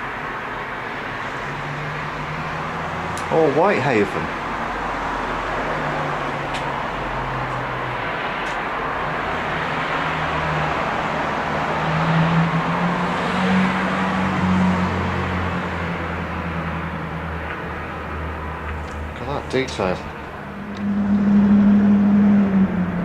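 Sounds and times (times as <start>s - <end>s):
car engines: 0.0s - 23.0s
vehicle engine low hum: 14.0s - 23.0s.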